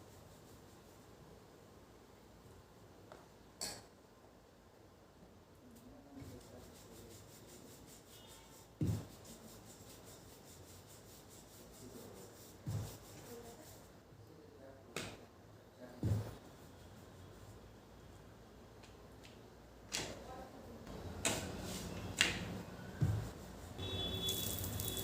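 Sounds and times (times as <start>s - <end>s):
soft rubbing and shuffling: 5.9s - 14.1s, 15.8s - 18.4s, 20.9s - 25.0s.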